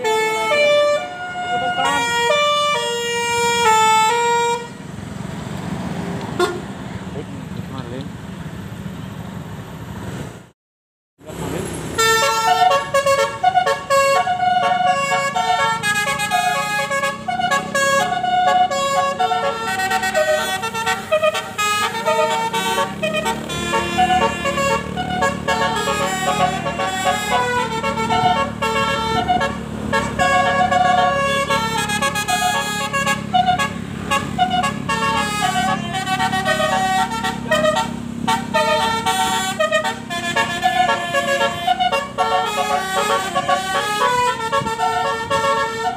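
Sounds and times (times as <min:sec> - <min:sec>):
multi-note bus horn melody: 0:00.0 - 0:04.9, 0:06.3 - 0:06.8, 0:11.9 - 0:45.9.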